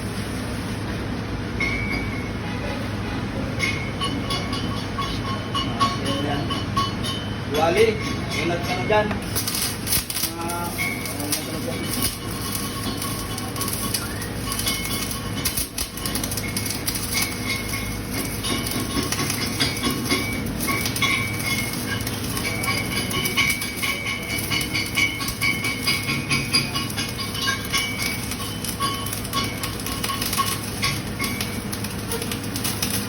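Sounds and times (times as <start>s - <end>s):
welding arc crackling and sizzling: 0.0s - 1.0s, 8.6s - 33.0s.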